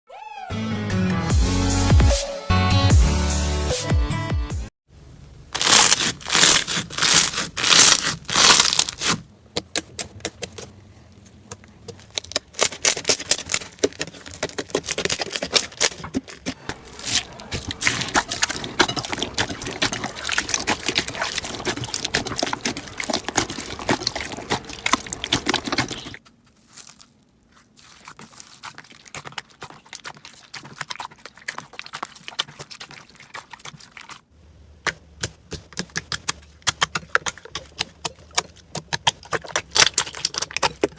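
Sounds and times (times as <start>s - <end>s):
slime squeezed with wet crackles: 5.6s - 9.2s, 12.1s - 34.2s, 35.8s - 40.9s.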